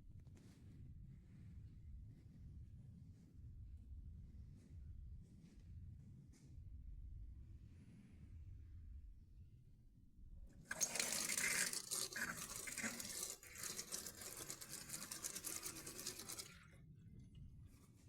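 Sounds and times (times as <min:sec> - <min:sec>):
tap water running into sink: 0:10.7 - 0:16.6.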